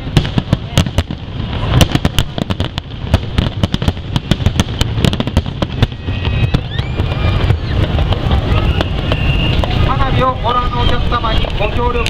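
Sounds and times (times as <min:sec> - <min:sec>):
firework bangs and crackles: 0:00.0 - 0:12.0
low rumble: 0:00.0 - 0:12.0.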